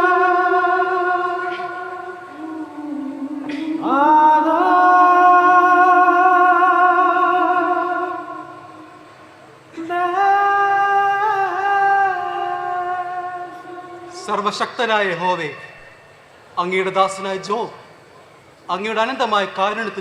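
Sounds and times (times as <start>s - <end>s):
person singing sustained notes: 0.0s - 15.9s.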